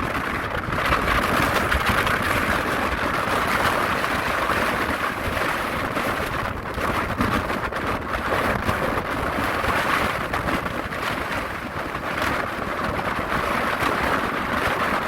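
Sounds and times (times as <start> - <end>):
surf crashing on rocky shore: 0.0 - 15.0
wind buffeting microphone: 0.0 - 15.0.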